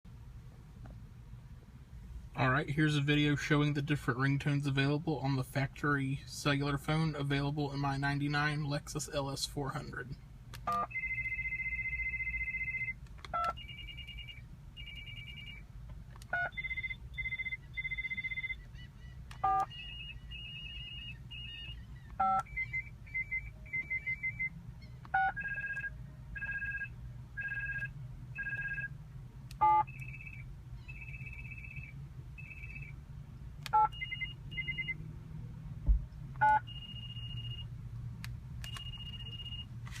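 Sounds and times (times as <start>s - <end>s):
electronic phone ringtones: 10.7s - 15.7s, 16.3s - 29.0s, 29.6s - 33.0s, 33.8s - 35.0s, 36.4s - 37.7s, 38.7s - 39.7s
keypress beep: 22.0s - 24.5s, 33.7s - 35.0s, 36.4s - 37.4s, 38.6s - 39.6s.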